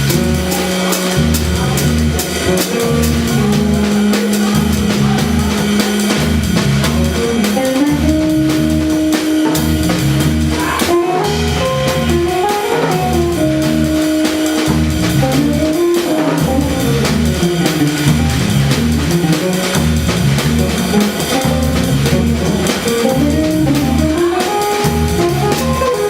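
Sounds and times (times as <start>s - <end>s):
drum kit beat: 0.0s - 26.0s
jazz guitar: 0.0s - 26.0s.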